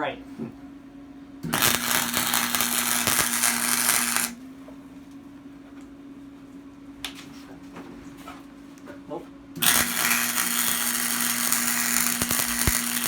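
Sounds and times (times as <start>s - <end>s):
steady hum: 0.0s - 7.0s, 9.3s - 13.0s
welding arc crackling: 1.4s - 4.4s, 9.6s - 13.0s.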